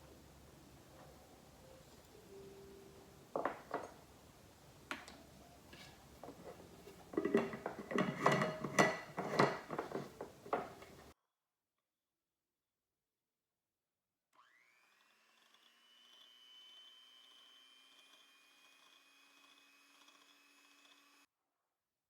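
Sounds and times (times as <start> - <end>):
metal utensil clinking on dishware: 5.0 - 11.1.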